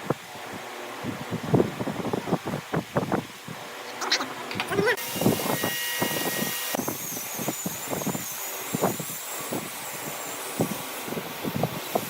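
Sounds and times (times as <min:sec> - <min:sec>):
wood lathe cutting hiss: 0:04.6 - 0:12.0.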